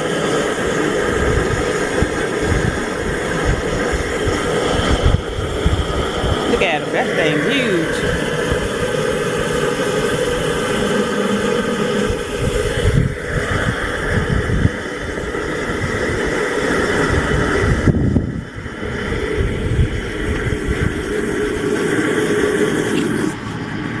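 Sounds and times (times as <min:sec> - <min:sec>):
motor running: 0:00.0 - 0:23.7
low rumbling buffets: 0:00.0 - 0:24.0.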